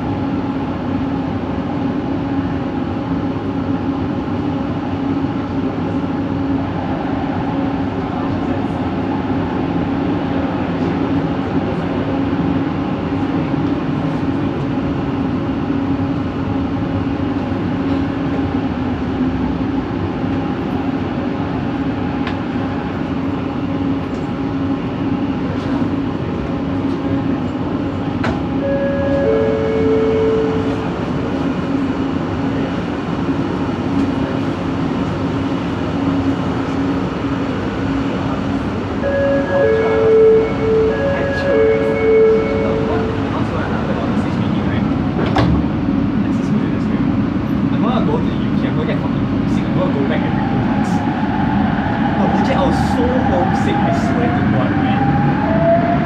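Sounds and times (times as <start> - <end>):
train rumble and motor hum: 0.0 - 56.0
two short steady tones: 28.6 - 31.2, 39.0 - 43.8.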